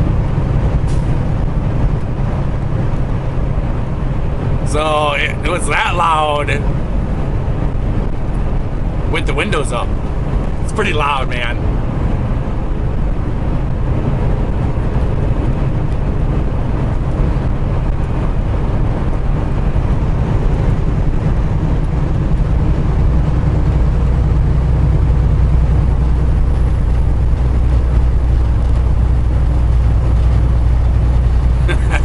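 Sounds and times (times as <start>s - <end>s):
road noise: 0.0s - 32.0s
truck diesel engine drone: 0.0s - 32.0s.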